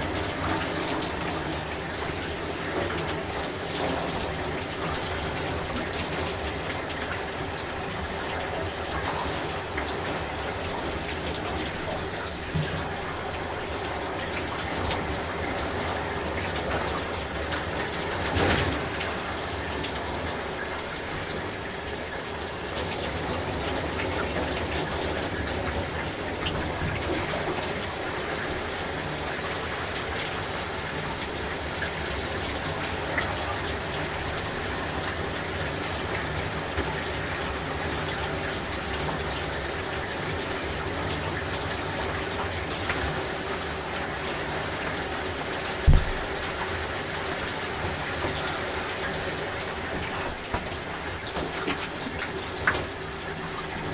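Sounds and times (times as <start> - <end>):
shower water spraying: 42.4 - 53.9
dull low thump: 45.8 - 46.4.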